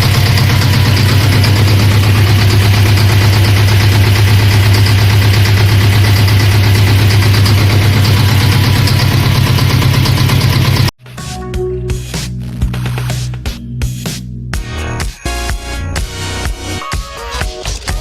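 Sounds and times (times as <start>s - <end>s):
tractor diesel engine chugging: 0.0s - 10.9s.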